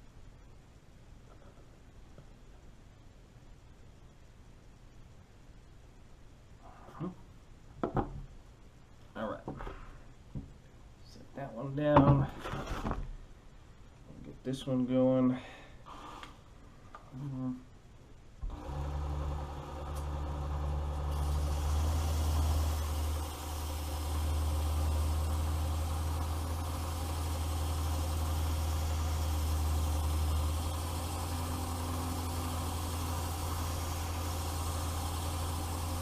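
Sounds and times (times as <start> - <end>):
belt sharpener motor humming: 18.5 - 36.0.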